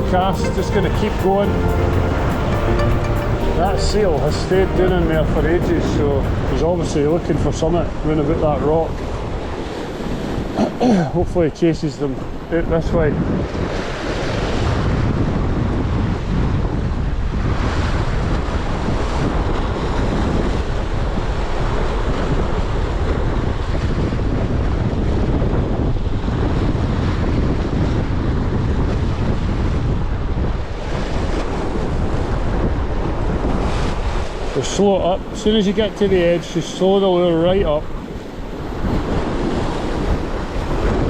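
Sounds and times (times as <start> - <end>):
wind buffeting microphone: 3.9 - 41.0
waves breaking over rocks: 30.2 - 41.0.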